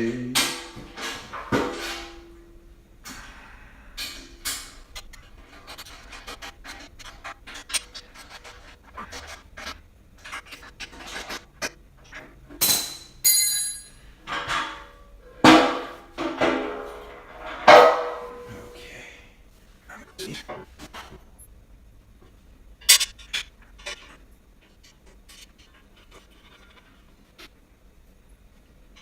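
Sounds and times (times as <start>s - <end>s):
metal parts and tools clanking: 0.0s - 2.5s, 12.0s - 18.8s, 22.8s - 24.2s.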